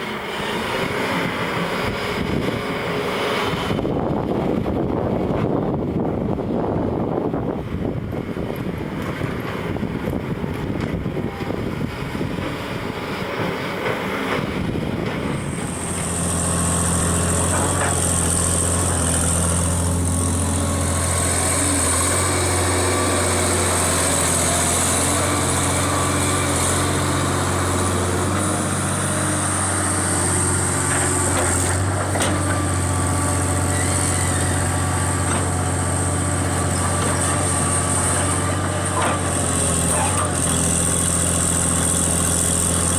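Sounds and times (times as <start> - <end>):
heavy diesel engine running: 0.0 - 42.9
wind-like rumbling: 1.7 - 36.0.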